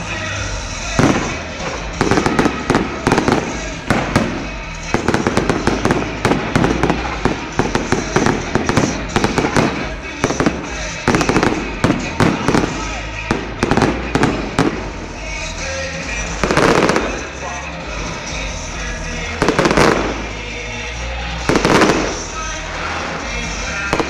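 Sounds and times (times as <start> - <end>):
fireworks crackling and popping: 0.0 - 24.0
fireworks bang: 1.0 - 15.0, 21.5 - 22.5.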